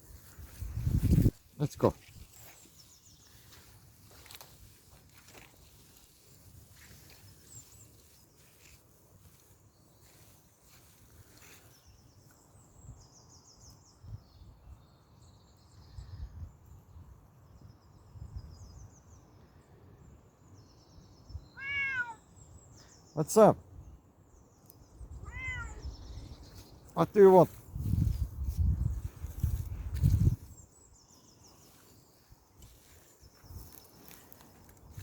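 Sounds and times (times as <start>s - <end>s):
kitten meow: 21.6s - 22.2s, 25.2s - 25.9s.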